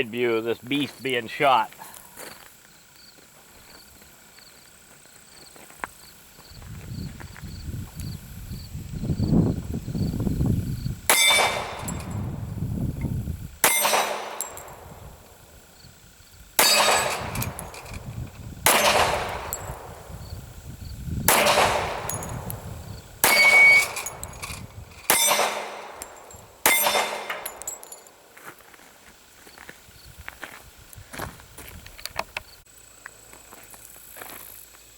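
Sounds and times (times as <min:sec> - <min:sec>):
pistol shots: 0:11.1 - 0:12.2, 0:13.6 - 0:15.3, 0:16.6 - 0:18.0, 0:18.6 - 0:20.1, 0:21.3 - 0:22.6, 0:23.2 - 0:28.3.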